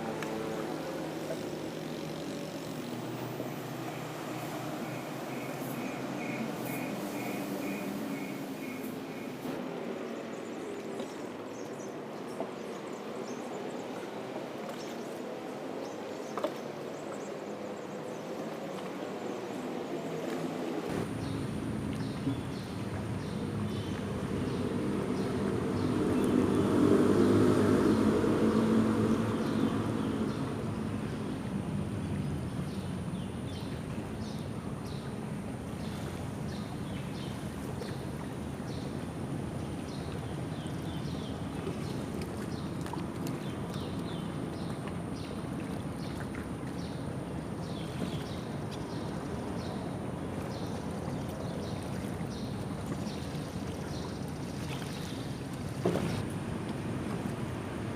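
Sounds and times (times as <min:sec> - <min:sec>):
engine passing: 0:00.0 - 0:09.8, 0:20.3 - 0:33.1
traffic rumbling across bridge: 0:00.0 - 0:10.1, 0:20.9 - 0:34.3.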